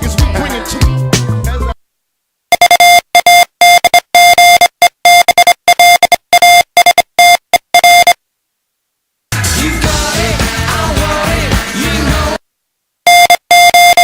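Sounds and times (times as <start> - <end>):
morse code beeps: 2.5 - 8.2, 13.1 - 14.0.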